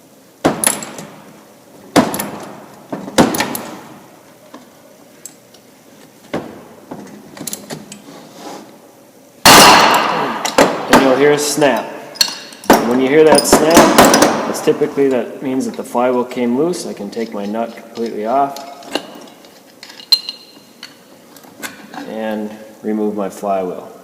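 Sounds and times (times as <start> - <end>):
loud bang with ringing tail: 9.5 - 11.2.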